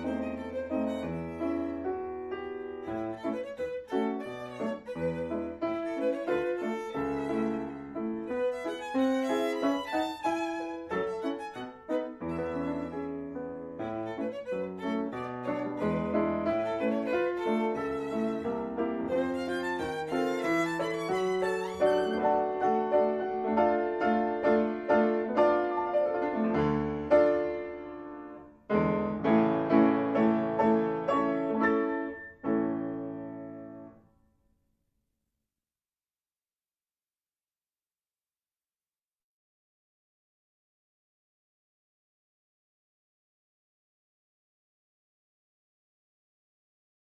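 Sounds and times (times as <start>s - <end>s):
violin and piano music: 0.0s - 34.0s.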